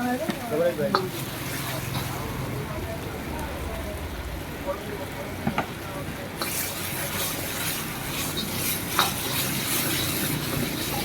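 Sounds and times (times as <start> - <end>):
food sizzling in a pan: 0.0 - 11.0
metal spatula scraping pan: 1.0 - 2.4, 6.4 - 11.0.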